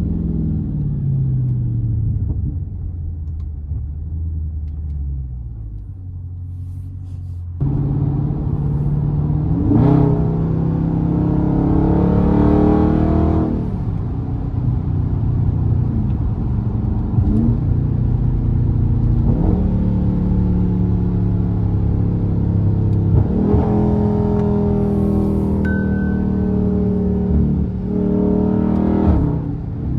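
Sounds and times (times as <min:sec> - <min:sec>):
car engine accelerating: 0:07.6 - 0:29.9.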